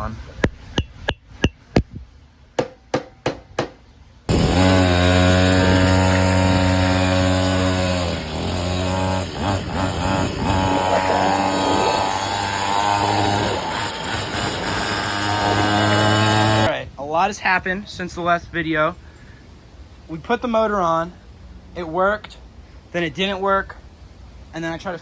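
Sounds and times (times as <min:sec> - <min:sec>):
sharp clicks or knocks: 0:02.6 - 0:03.8
small gasoline engine running: 0:04.3 - 0:16.7.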